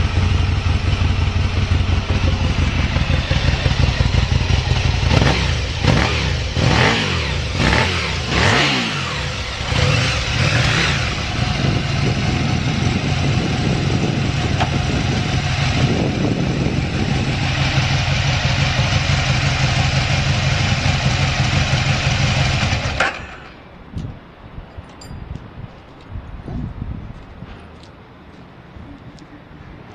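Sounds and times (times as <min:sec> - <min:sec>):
motorcycle engine revving and idling: 0:00.0 - 0:23.6.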